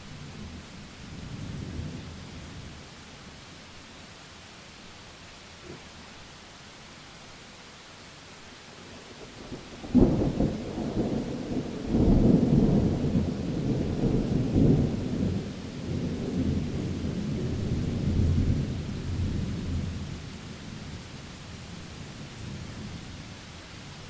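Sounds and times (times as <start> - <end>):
thunder rumbling: 0.0 - 2.9, 9.3 - 20.4
rain hissing: 0.0 - 24.0.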